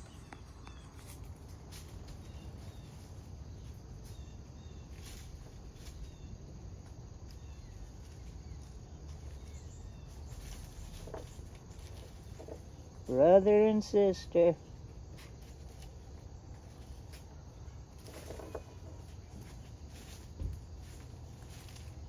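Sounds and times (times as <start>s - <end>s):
bird chirps: 0.0s - 1.2s, 2.1s - 5.2s, 7.4s - 11.4s
faint insects: 0.0s - 22.0s.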